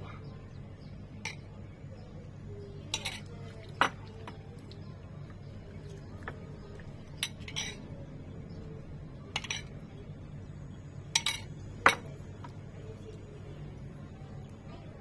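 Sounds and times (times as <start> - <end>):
utensils clinking against dishes: 1.2 - 1.5, 2.9 - 4.7, 6.2 - 7.9, 9.3 - 9.9, 11.1 - 12.2.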